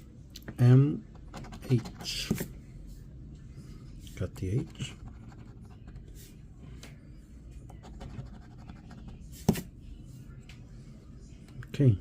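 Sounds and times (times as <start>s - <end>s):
scratching lottery ticket: 1.2s - 2.3s, 4.4s - 6.3s, 7.7s - 9.6s.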